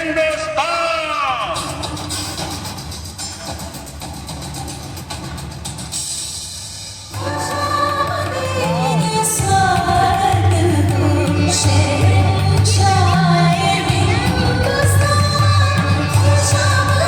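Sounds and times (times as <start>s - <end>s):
music with singing and bass: 7.2s - 17.0s.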